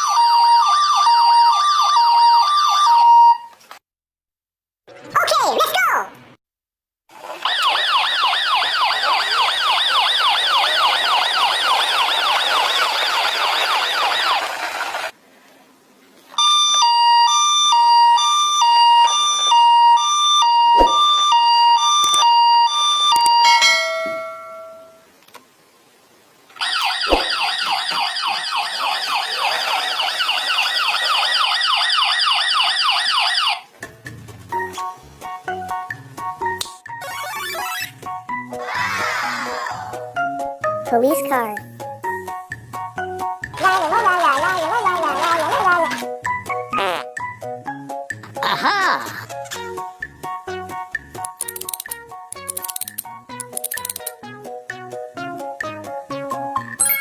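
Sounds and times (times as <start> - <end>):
fast-warbling toy siren: 0.0 - 3.4, 7.4 - 14.6, 16.4 - 23.4, 26.6 - 33.7
two-tone toy siren: 0.0 - 3.5, 7.5 - 14.5, 16.4 - 23.5, 26.6 - 33.7.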